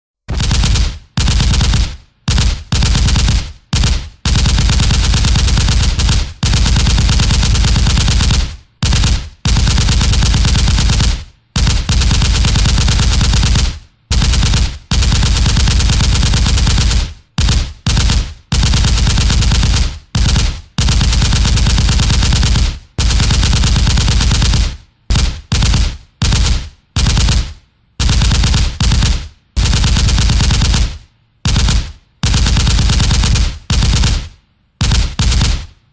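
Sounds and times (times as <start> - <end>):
machine gun firing in bursts: 0.3 - 35.8.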